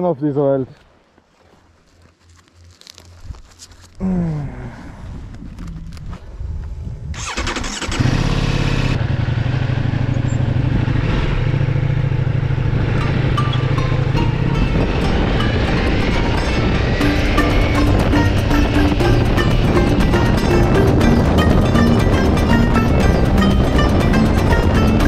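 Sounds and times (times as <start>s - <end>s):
motorcycle engine running: 7.2s - 25.0s.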